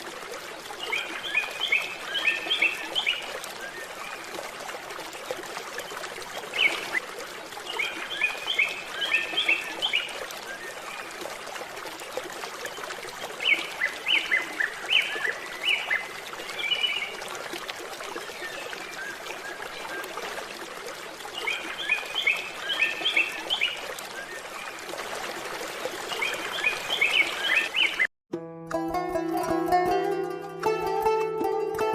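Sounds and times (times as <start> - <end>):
songbird chirping: 0.8 - 4.3, 7.7 - 11.1, 12.7 - 17.2, 21.3 - 24.8, 26.0 - 28.1
plucked-string music: 28.3 - 31.9.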